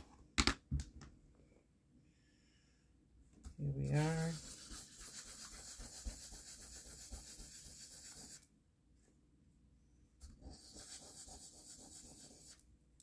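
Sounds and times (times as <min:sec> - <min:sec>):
hand sanding resin: 0:03.8 - 0:08.5, 0:10.4 - 0:12.6.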